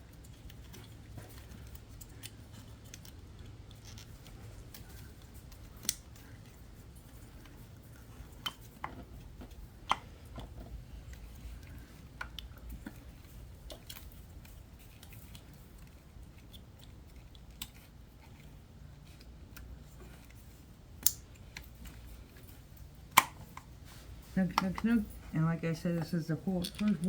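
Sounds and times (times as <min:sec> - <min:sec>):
hand tools clicking and tapping: 0:19.1 - 0:27.0.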